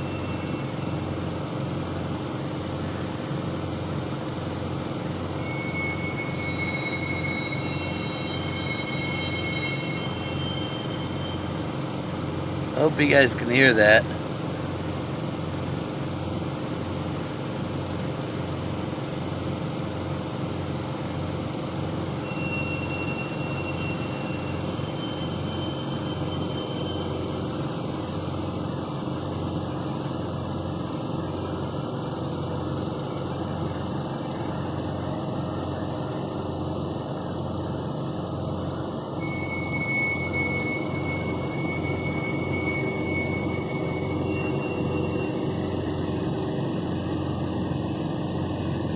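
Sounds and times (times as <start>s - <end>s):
low droning hum: 0.0s - 12.9s, 22.2s - 48.9s
thin high tones: 5.4s - 13.8s, 39.2s - 47.4s.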